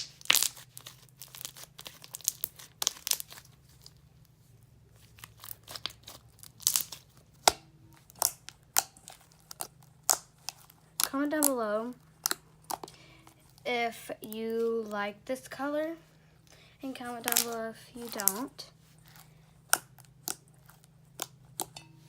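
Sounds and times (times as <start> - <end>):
slime squished by hand: 0.0 - 4.0, 5.0 - 13.7, 17.1 - 21.8.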